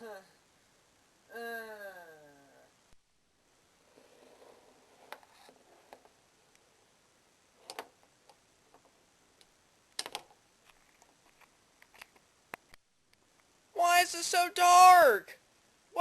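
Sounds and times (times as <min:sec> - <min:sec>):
faint clicks and knocks: 0:07.6 - 0:13.5.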